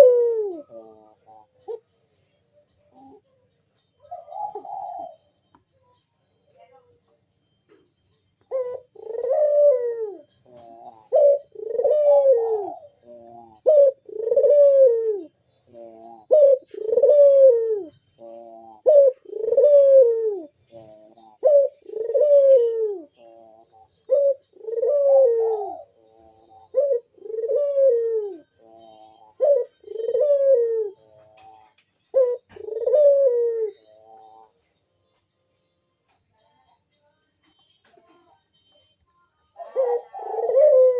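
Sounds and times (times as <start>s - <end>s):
dove cooing: 0.0s - 3.4s, 4.0s - 5.5s, 8.4s - 34.6s, 39.6s - 40.9s.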